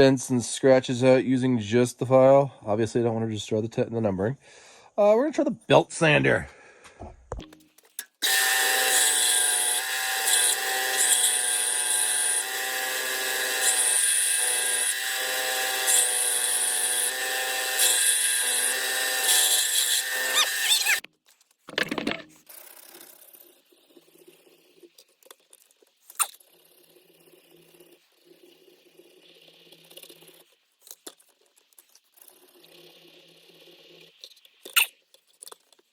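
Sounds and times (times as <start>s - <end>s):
belt sander grinding metal: 8.2s - 21.0s.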